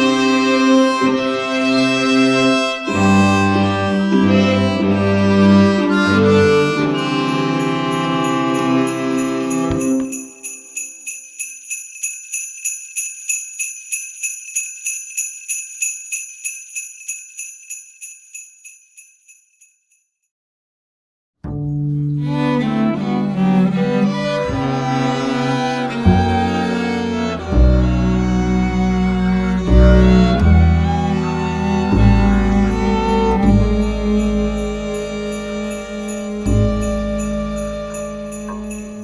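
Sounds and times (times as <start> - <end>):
string ensemble playing: 0.0 - 10.1, 21.8 - 39.0
jingle bell shaken: 7.0 - 20.0, 31.2 - 39.0.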